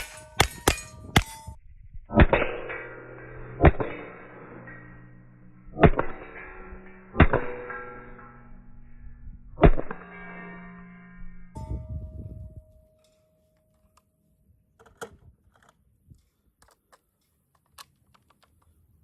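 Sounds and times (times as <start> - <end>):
rifle shots: 0.0 - 1.4
steel plates ringing: 0.0 - 13.9.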